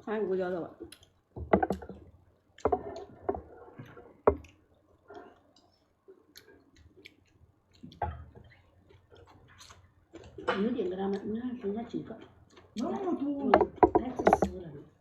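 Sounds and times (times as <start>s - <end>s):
light clicks and knocks: 1.4s - 4.6s, 13.4s - 14.7s.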